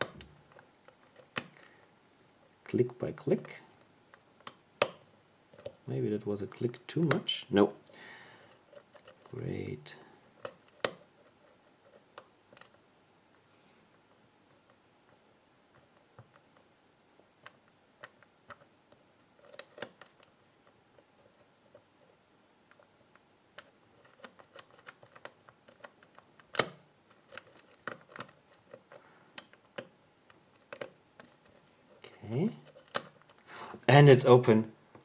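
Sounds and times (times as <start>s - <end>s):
lock pick clicking in a lock: 23.6s - 29.9s, 30.5s - 31.6s, 32.6s - 33.4s.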